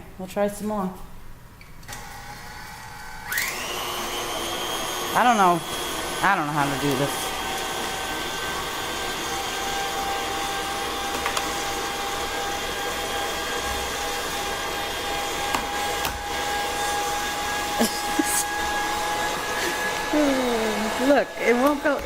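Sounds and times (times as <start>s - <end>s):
mixer motor whining: 1.9s - 22.0s.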